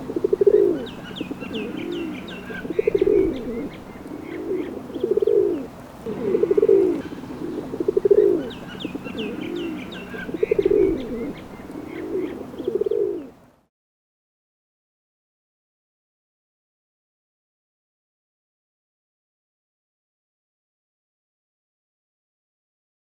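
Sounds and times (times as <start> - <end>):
pigeons cooing: 0.0 - 13.4.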